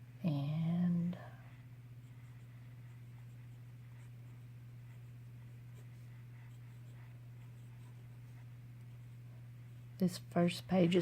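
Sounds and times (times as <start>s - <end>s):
pen nib scratching paper: 2.0s - 9.8s.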